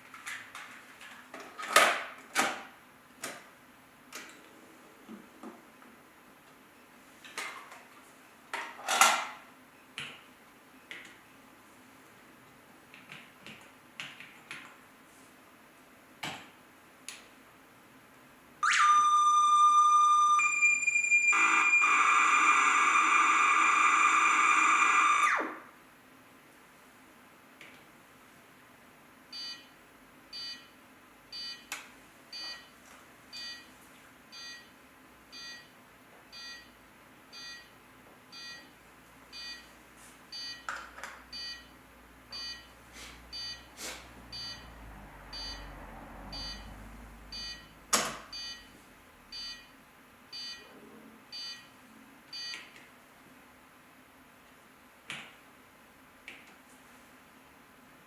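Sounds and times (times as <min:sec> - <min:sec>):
short electronic beeps: 0:43.3 - 0:43.7, 0:44.3 - 0:44.7, 0:45.3 - 0:45.7, 0:46.3 - 0:46.7, 0:47.3 - 0:48.7.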